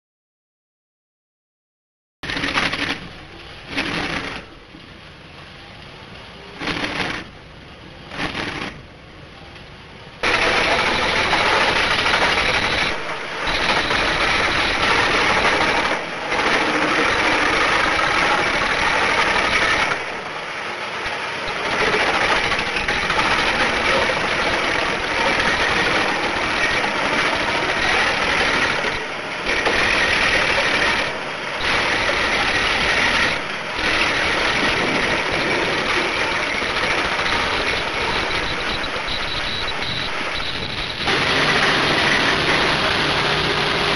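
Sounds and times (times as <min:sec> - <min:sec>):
wood chipper grinding: 0:10.2 - 0:43.9.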